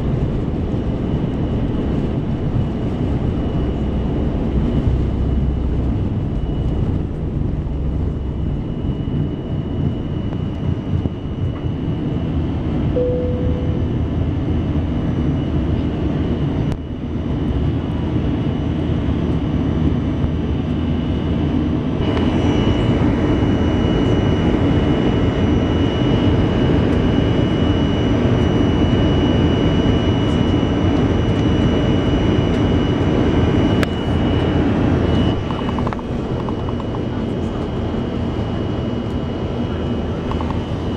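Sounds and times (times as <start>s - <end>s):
jet engines rumbling and whining: 0.0s - 40.9s
short tone: 12.9s - 14.2s.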